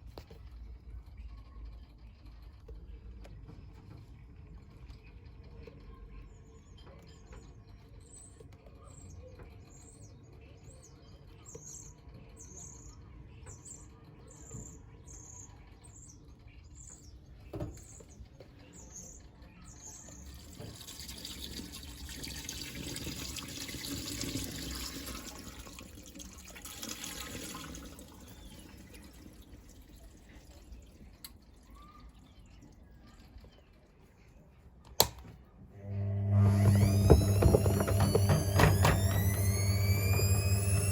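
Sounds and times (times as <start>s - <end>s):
washing machine chirps: 19.2s - 33.2s, 35.8s - 40.9s.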